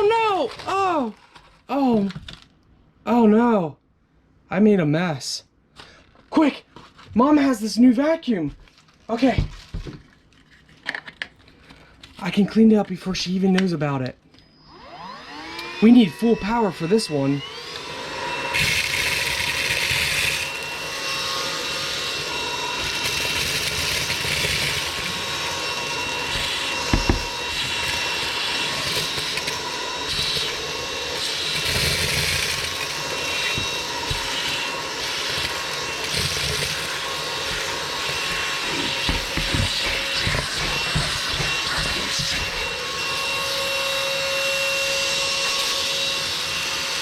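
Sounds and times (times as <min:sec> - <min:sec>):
handheld vacuum whining: 0:14.3 - 0:47.0.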